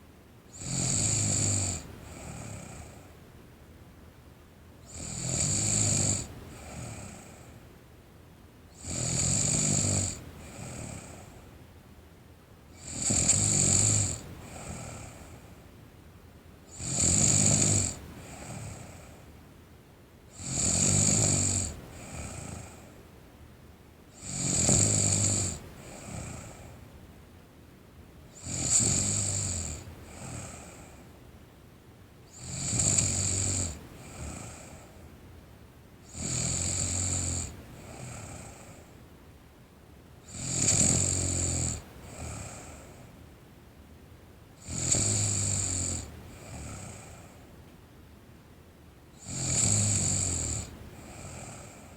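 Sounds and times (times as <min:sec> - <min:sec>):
girl snoring: 0:00.6 - 0:03.0, 0:08.8 - 0:11.3, 0:12.8 - 0:15.3, 0:16.7 - 0:19.2, 0:20.4 - 0:22.8, 0:24.2 - 0:26.7, 0:28.4 - 0:31.0, 0:32.3 - 0:34.9, 0:36.1 - 0:38.8, 0:40.3 - 0:43.0, 0:44.6 - 0:47.4, 0:49.2 - 0:51.9.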